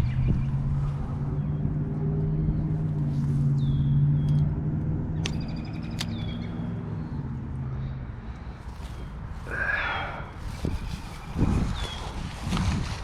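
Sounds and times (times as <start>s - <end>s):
bird chirps: 3.5s - 4.5s, 5.2s - 7.2s.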